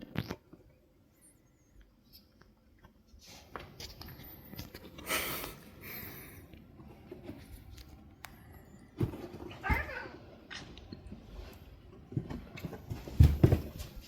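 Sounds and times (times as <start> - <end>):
cats rustling in a basket: 8.9 - 14.0.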